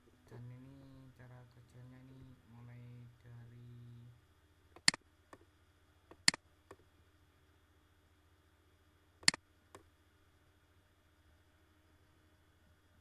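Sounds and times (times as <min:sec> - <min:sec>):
faint steady hum: 0:00.0 - 0:13.0
computer mouse clicking: 0:04.8 - 0:05.4.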